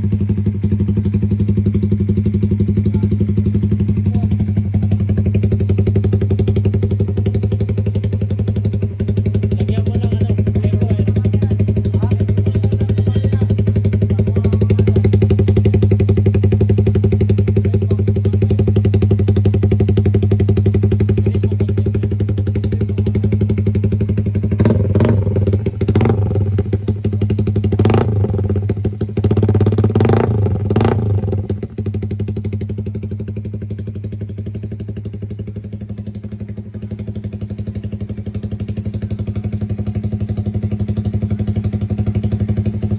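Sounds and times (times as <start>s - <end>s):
motorcycle engine idling: 0.0s - 42.9s.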